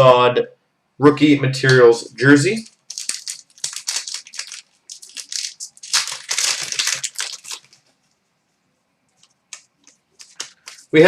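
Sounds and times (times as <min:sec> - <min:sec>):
card packs wrapper crinkling: 0:02.4 - 0:07.9, 0:09.2 - 0:11.0.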